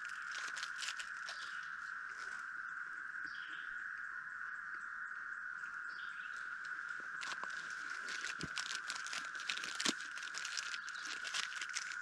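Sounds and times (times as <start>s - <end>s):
plastic snack wrapper crinkling: 0.0s - 1.5s, 7.2s - 12.0s.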